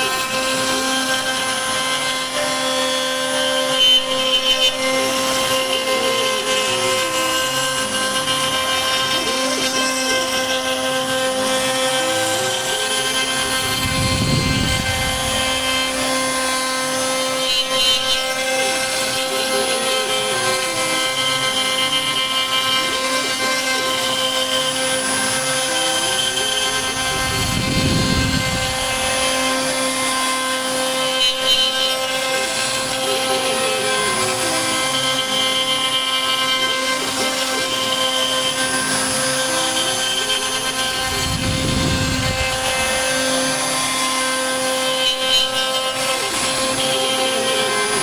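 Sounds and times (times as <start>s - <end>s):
router cutting wood: 0.0s - 48.0s
spindle whine: 0.0s - 48.0s
stepper motors changing pitch: 0.0s - 48.0s.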